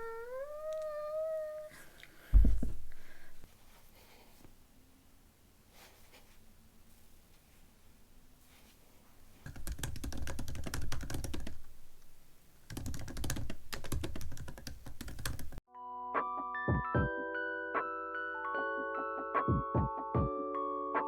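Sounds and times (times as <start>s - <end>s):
computer keyboard typing: 9.4s - 11.6s, 12.7s - 15.6s.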